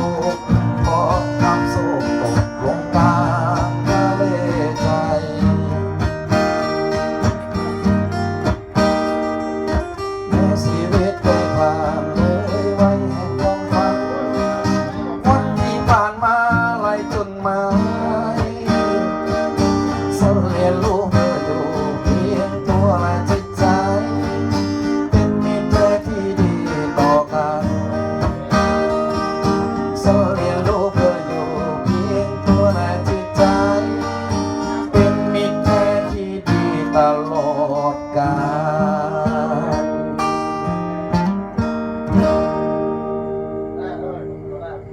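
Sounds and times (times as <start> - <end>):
guitar song instrumental: 0.0 - 44.9.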